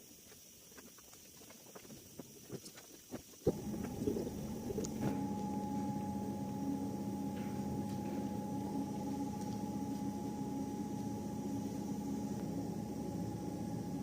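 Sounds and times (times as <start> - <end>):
small electric motor humming: 3.5 - 14.0.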